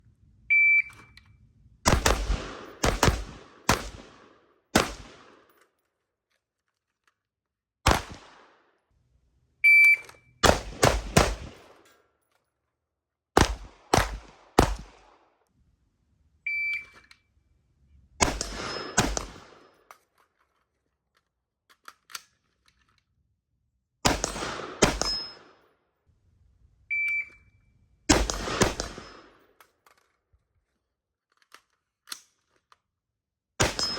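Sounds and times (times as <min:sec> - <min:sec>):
shot timer beep: 0:00.5 - 0:01.2, 0:09.6 - 0:10.3, 0:16.5 - 0:17.0, 0:26.9 - 0:27.4
rifle shots: 0:01.9 - 0:05.5, 0:07.9 - 0:08.6, 0:10.4 - 0:11.8, 0:13.4 - 0:15.2, 0:18.2 - 0:19.7, 0:24.0 - 0:25.5, 0:28.1 - 0:29.4, 0:33.6 - 0:33.9.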